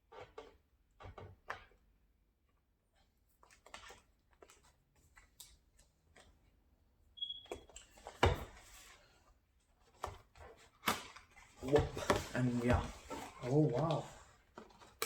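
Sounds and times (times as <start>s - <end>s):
packaging clicks and rustles: 9.8s - 15.0s.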